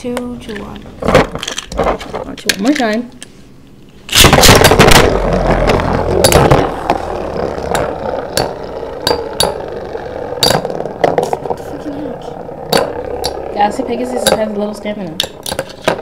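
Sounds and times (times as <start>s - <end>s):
spinning tops launching: 4.1s - 16.0s
metal tops scraping and clacking: 4.2s - 16.0s.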